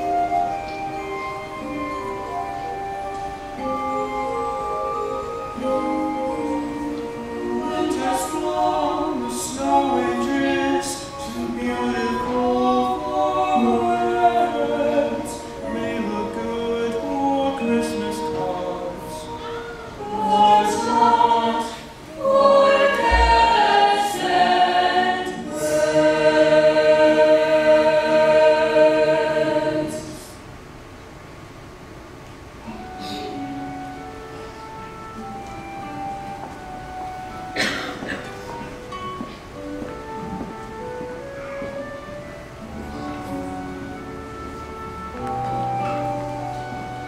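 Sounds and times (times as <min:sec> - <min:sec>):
choir singing in harmony: 0:00.0 - 0:30.5, 0:32.7 - 0:39.1.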